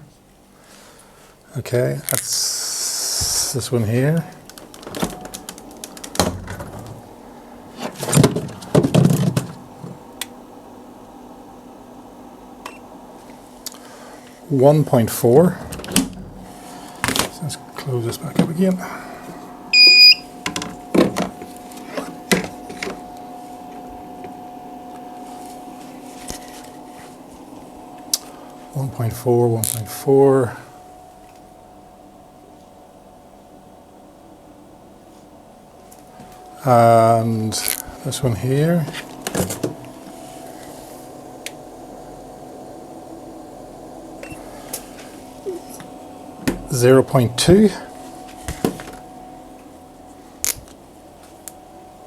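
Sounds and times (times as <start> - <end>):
steady hum: 0.0 - 52.0
fridge door knocks and clunks: 6.2 - 7.0, 7.9 - 10.0.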